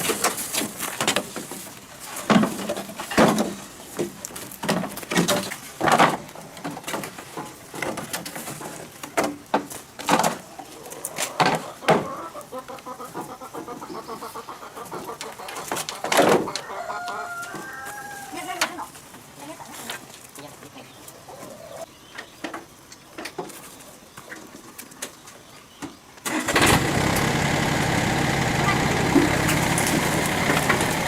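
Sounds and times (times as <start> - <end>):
chickens clucking: 10.1 - 25.4, 26.2 - 31.0.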